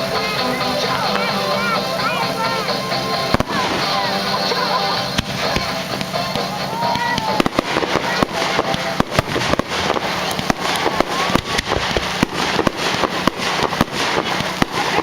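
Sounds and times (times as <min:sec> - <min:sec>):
fireworks bangs and crackles: 0:00.0 - 0:15.0.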